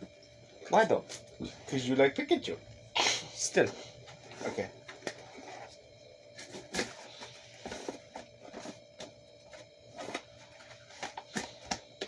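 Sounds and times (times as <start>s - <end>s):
items knocking and rustling: 4.0s - 12.0s.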